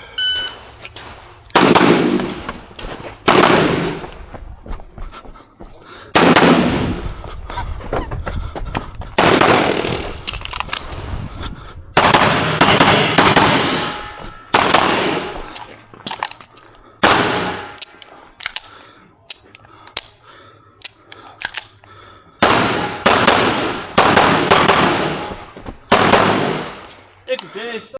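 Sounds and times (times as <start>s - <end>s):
loud pistol shots with echo: 1.5s - 2.5s, 3.3s - 4.0s, 6.2s - 7.0s, 9.2s - 10.2s, 12.0s - 15.4s, 17.0s - 17.7s, 22.4s - 25.3s, 25.9s - 26.8s
sharp gunshot cracks: 1.5s - 2.5s, 3.3s - 4.0s.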